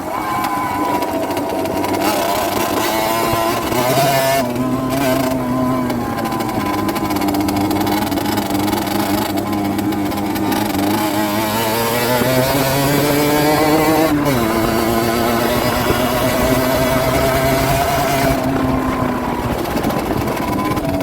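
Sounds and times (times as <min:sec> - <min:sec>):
two-stroke motorcycle engine running: 0:00.0 - 0:21.0.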